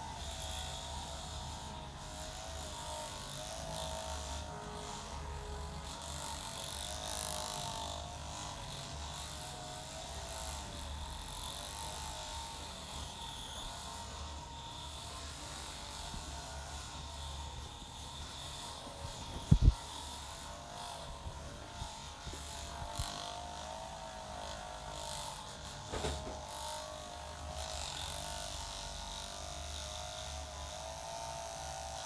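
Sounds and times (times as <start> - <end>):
steady low hum: 15.8 - 23.1.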